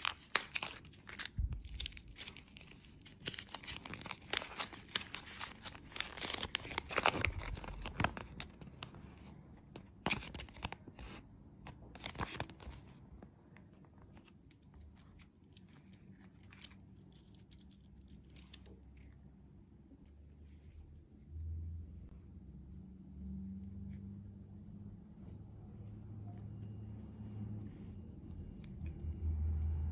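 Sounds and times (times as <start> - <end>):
wrapper tearing and crinkling: 0.0 - 9.0.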